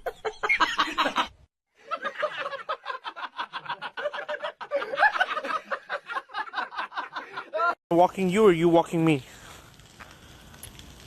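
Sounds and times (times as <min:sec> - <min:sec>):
person laughing: 0:02.0 - 0:07.8.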